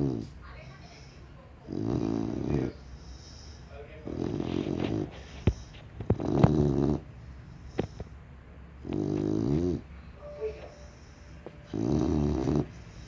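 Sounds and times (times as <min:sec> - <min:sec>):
person snoring: 0:11.7 - 0:12.8.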